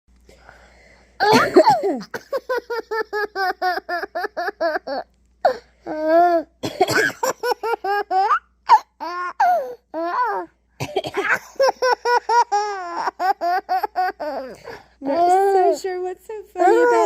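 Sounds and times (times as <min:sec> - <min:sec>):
adult coughing: 0:01.2 - 0:02.4, 0:06.6 - 0:07.4, 0:10.8 - 0:11.6
baby laughing hysterically: 0:01.6 - 0:05.1, 0:07.0 - 0:10.4, 0:11.0 - 0:14.8.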